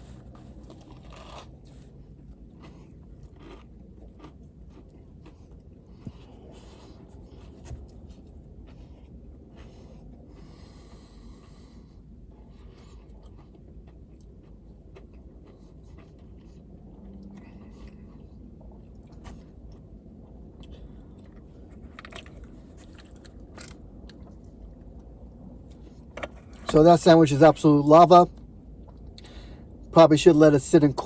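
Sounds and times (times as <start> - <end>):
crisp breading crunching: 0.0 - 7.5
person chewing crunchy food: 0.0 - 26.8.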